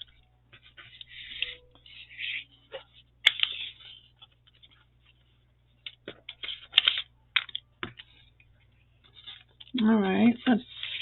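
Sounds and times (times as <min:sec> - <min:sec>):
paper rustling: 0:00.0 - 0:08.4, 0:09.0 - 0:11.0.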